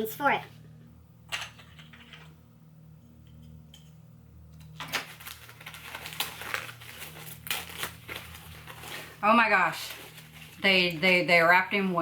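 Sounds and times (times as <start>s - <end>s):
packing wrap rustling and crinkling: 4.8s - 11.9s.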